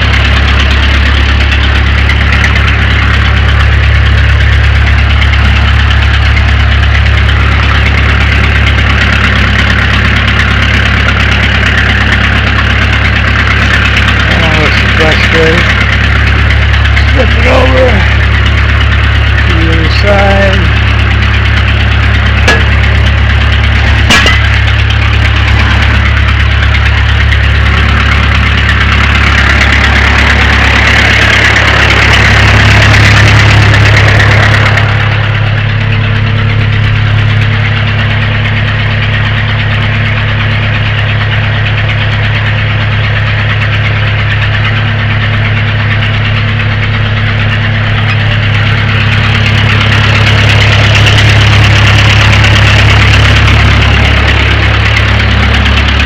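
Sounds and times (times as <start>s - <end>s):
diesel engine running: 0.0s - 56.0s
sharp metal clank: 22.4s - 23.0s, 24.0s - 24.6s.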